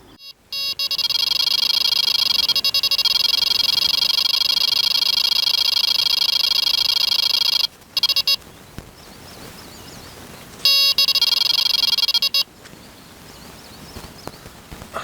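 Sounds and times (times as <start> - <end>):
short electronic bleeps: 0.0 - 8.4, 10.6 - 12.5.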